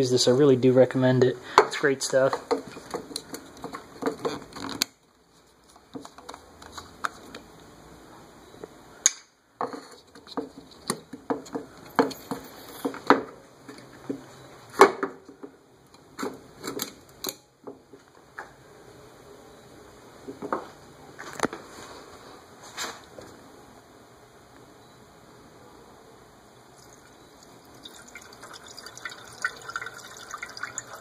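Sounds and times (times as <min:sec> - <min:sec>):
liquid pouring: 0:26.8 - 0:31.0.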